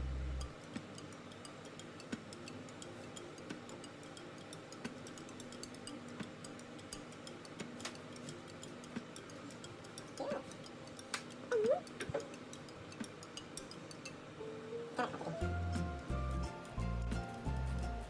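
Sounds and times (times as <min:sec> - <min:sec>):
low steady hum: 0:00.0 - 0:04.4.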